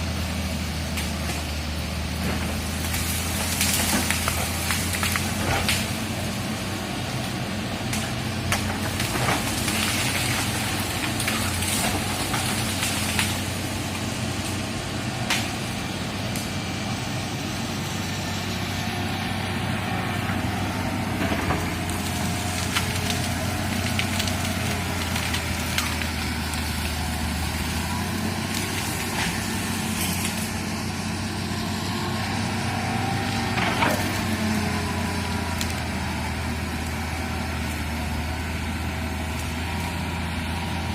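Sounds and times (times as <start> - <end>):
diesel engine droning: 0.0 - 40.9.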